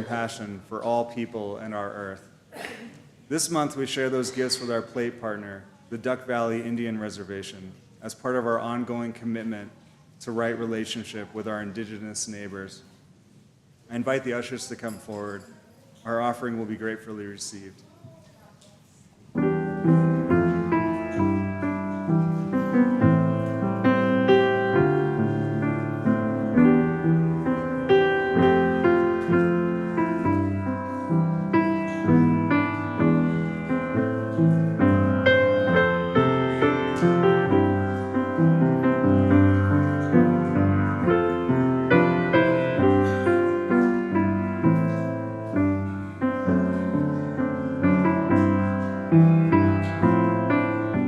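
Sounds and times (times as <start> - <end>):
piano piece: 19.3 - 51.0.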